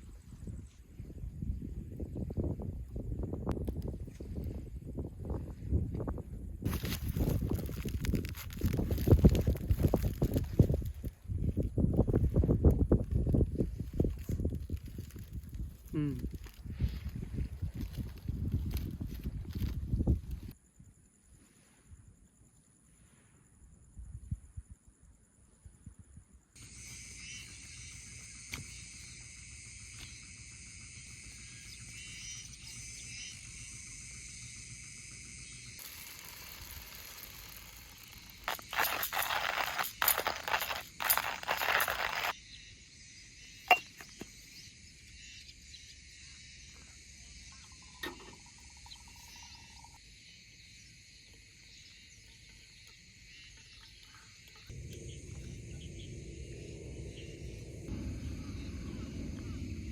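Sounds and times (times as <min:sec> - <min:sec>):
insects chirring: 0:00.0 - 0:59.9
loud crackling rustling: 0:06.7 - 0:11.1, 0:35.8 - 0:42.3.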